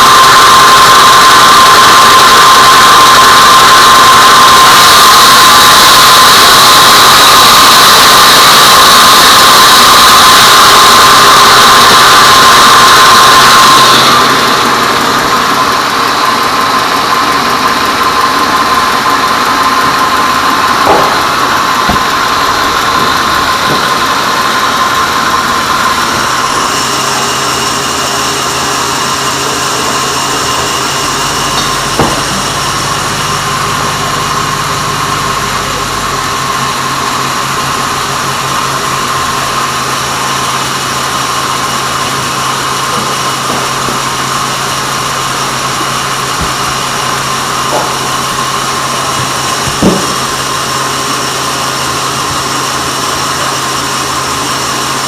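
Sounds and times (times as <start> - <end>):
band sawmill whining: 0.0 - 55.0
sharp knocks: 20.8 - 22.2, 49.6 - 50.2.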